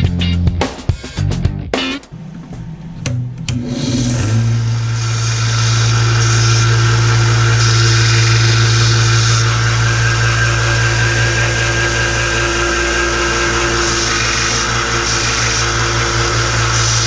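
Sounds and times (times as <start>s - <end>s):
power tool motor humming: 4.1s - 17.0s.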